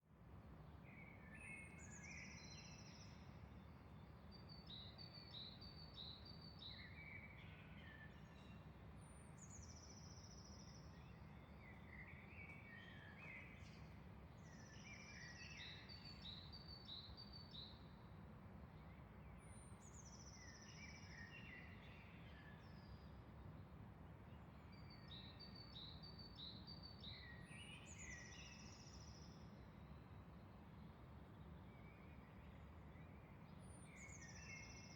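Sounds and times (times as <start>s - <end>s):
songbird singing: 33.8s - 34.9s.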